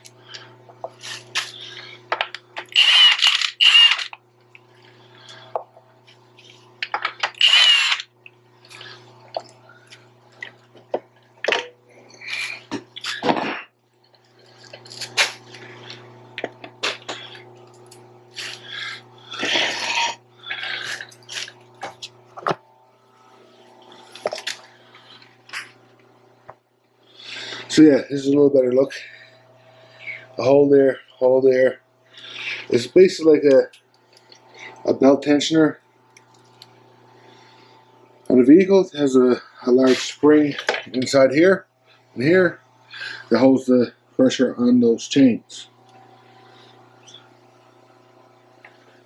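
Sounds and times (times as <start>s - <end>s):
steady low hum: 0.0s - 49.0s
power tool bursts: 2.7s - 4.2s, 7.3s - 8.1s.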